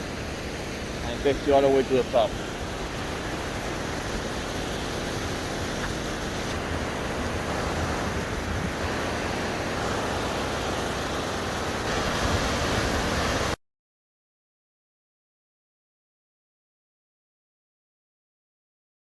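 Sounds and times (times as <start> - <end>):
waterfall roaring: 0.0 - 13.6.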